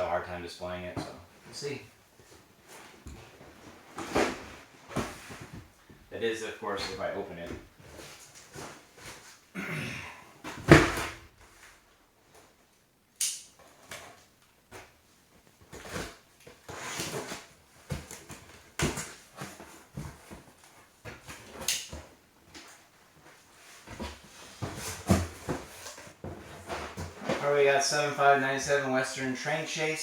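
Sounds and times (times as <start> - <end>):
cardboard boxes handled: 2.2 - 6.1, 15.6 - 27.7.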